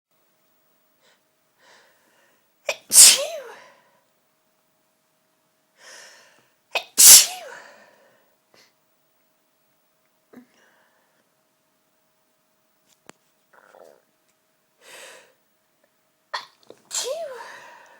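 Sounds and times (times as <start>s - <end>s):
person sneezing: 2.7s - 3.7s, 6.8s - 7.7s, 16.4s - 17.9s.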